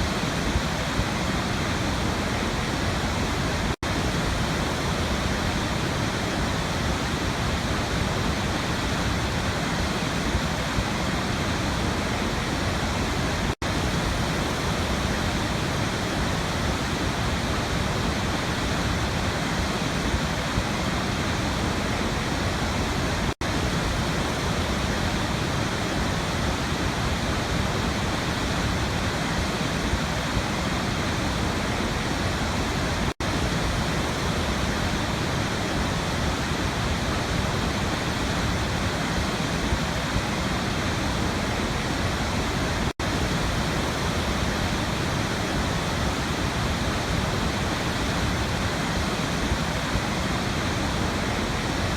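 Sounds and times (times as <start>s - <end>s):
waterfall rushing: 0.0s - 51.9s.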